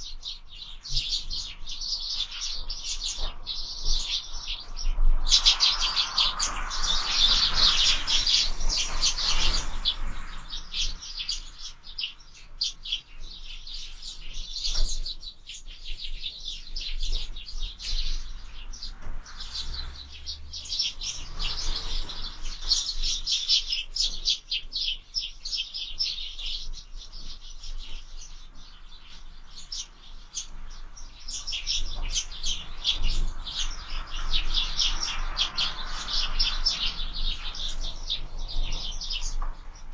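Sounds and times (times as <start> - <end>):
sparrows chirping: 0.0 - 39.9.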